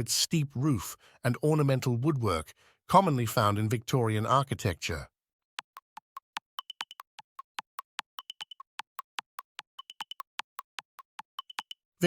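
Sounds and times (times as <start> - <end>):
clock-like ticks: 5.6 - 11.8.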